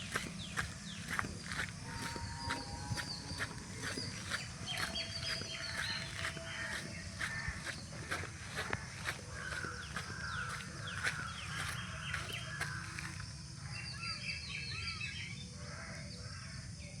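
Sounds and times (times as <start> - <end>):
birds chirping: 0.0 - 15.2.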